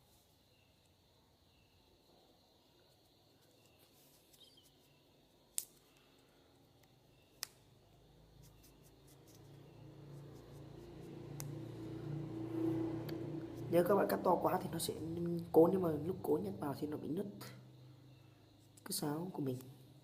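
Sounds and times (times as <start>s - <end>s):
scissors snipping foam: 5.5s - 5.8s
low droning hum: 9.6s - 17.0s.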